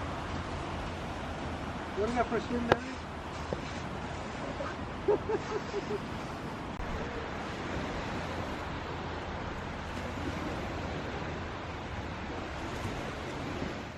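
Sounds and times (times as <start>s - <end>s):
waves washing onto beach: 0.0s - 13.9s.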